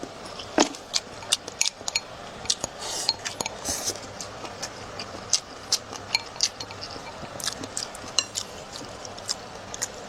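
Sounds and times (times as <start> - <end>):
utensils clinking against plates: 0.3 - 4.7, 6.0 - 8.8.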